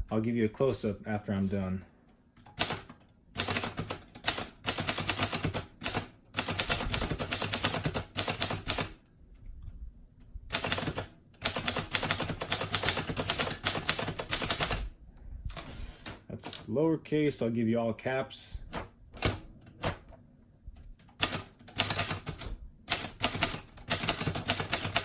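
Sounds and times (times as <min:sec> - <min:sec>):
typewriter keystroke clacks: 0:02.4 - 0:09.0, 0:10.5 - 0:14.8, 0:18.7 - 0:20.2, 0:21.0 - 0:25.0.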